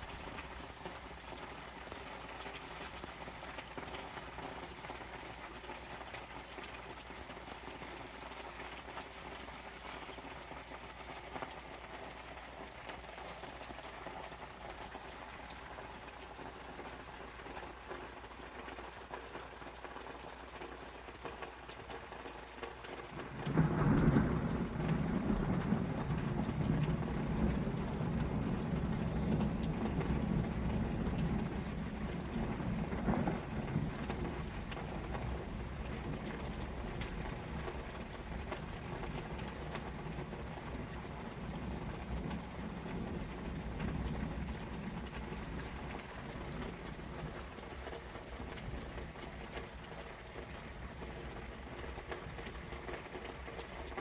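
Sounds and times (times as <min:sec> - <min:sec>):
rain on plastic tarps: 0:00.0 - 0:54.0
steady rain: 0:00.0 - 0:54.0
thunder rumbling: 0:23.1 - 0:54.0.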